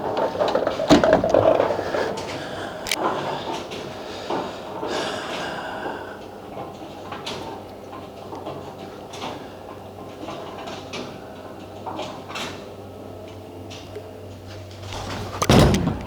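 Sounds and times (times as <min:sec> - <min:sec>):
bowling balls and pins clattering: 0:00.0 - 0:04.6, 0:14.5 - 0:16.0
low machinery hum: 0:00.0 - 0:16.0.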